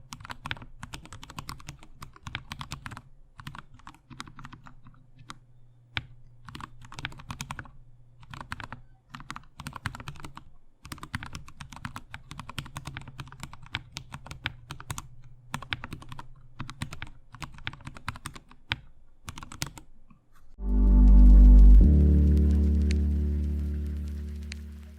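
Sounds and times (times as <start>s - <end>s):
mechanical keyboard typing: 0.0s - 5.4s, 6.0s - 19.9s.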